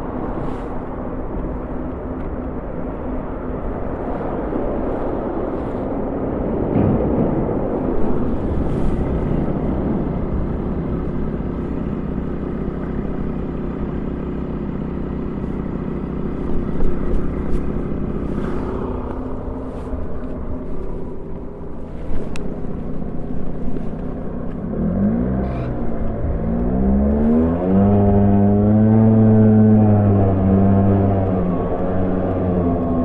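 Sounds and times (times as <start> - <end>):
road and wind noise: 0.0 - 33.0
scooter engine running: 8.2 - 33.0.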